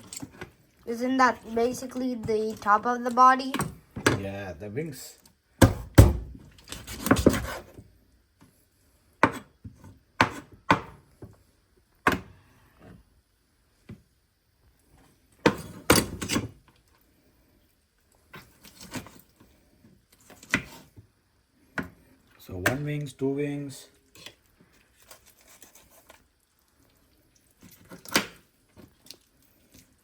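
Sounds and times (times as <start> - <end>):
knife chopping chicken on board: 10.2 - 11.0.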